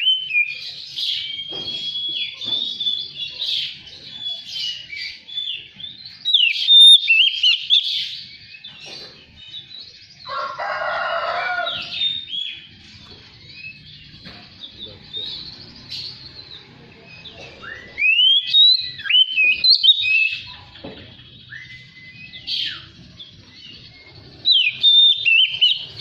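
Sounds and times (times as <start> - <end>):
bird singing whistles and trills: 0.0 - 10.0, 11.8 - 26.0
harsh bird call: 24.0 - 26.0.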